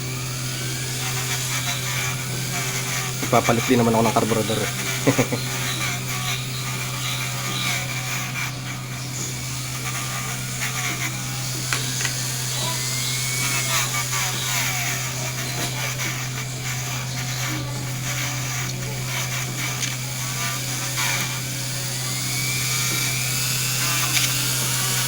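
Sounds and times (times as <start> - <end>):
steady low hum: 0.0 - 25.0
small metal parts clicking: 23.8 - 25.0.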